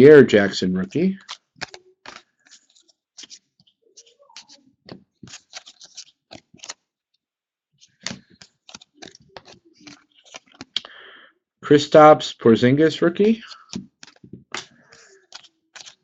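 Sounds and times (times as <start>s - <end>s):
trading cards flipping: 1.2s - 6.8s, 7.8s - 10.9s, 13.2s - 16.0s.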